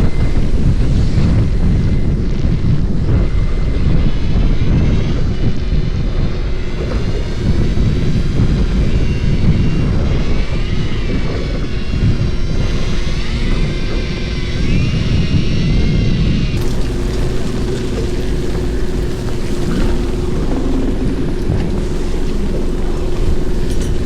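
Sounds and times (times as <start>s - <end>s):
boat engine rumbling: 0.0s - 24.0s
faint wavering whine: 0.0s - 24.0s
wind on microphone: 0.0s - 24.0s
sea noise: 5.5s - 15.4s, 16.6s - 24.0s.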